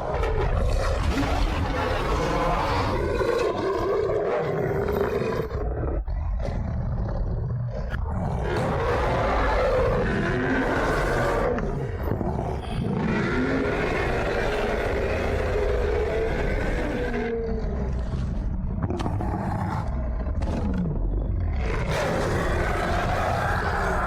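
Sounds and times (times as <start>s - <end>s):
creature roaring: 0.0s - 24.0s.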